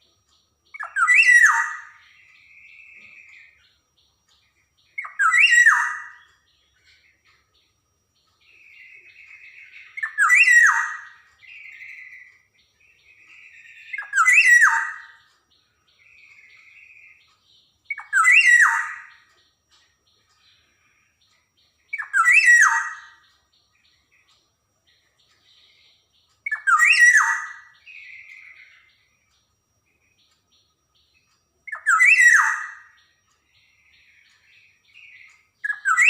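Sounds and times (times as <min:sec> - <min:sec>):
soft buzzy bird notes: 0:00.0 - 0:36.0
bird calling with swooping notes: 0:00.7 - 0:03.6, 0:13.0 - 0:15.4, 0:17.9 - 0:19.4.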